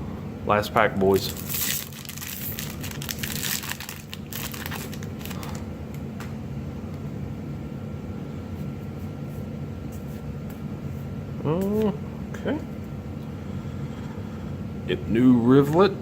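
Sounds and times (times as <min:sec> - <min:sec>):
foil wrapper crinkling: 0:01.0 - 0:05.6.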